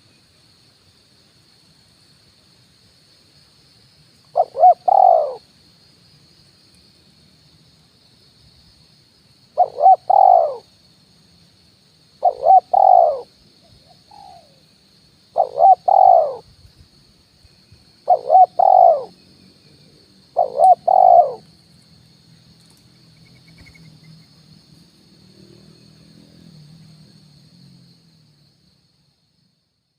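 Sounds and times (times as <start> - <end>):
dove cooing: 4.4 - 5.4, 9.6 - 10.6, 12.2 - 13.3, 13.9 - 14.6, 15.4 - 16.4, 18.0 - 19.1, 20.4 - 21.4.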